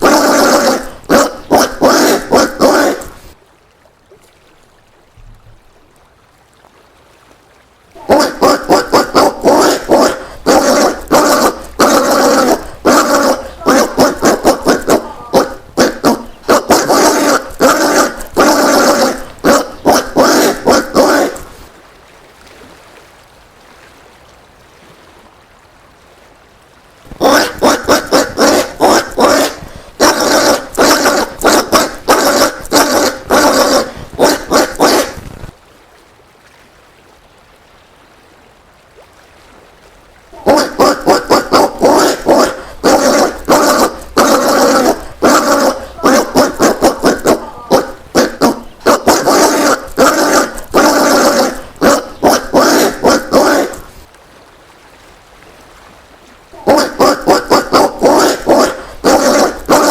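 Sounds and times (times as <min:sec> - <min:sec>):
peccary calling: 0:00.0 - 0:03.4, 0:07.9 - 0:21.7, 0:27.1 - 0:35.5, 0:40.4 - 0:54.1, 0:56.6 - 0:59.9.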